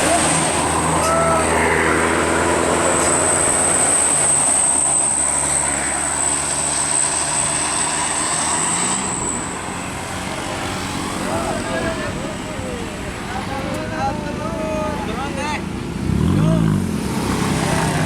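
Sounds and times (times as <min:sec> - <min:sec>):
bus diesel engine running: 0:00.0 - 0:16.9
road noise: 0:00.0 - 0:18.0.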